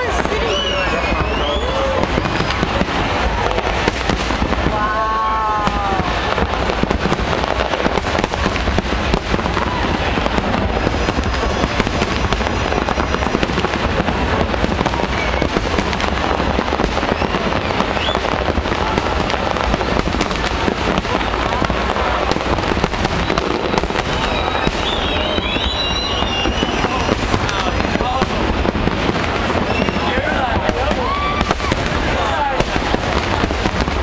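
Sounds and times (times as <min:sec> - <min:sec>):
fireworks bangs and crackling: 0:00.0 - 0:34.0
wavering high whistle: 0:24.1 - 0:27.1.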